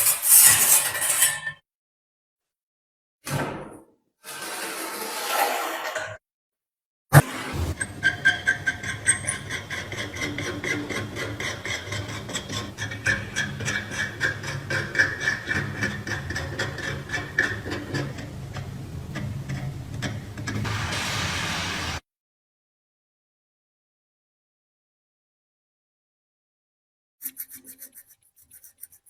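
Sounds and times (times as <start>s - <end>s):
low hum: 7.2s - 7.9s.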